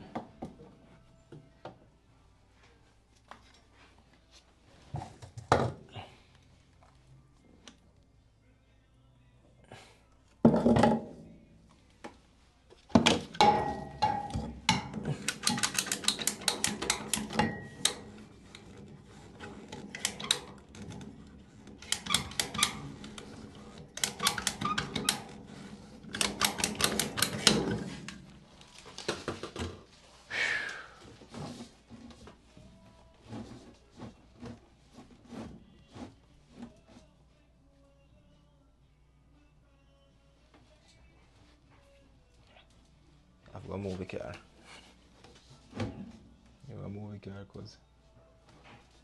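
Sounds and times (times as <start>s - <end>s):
rapid clicking of hard objects: 15.0s - 17.9s.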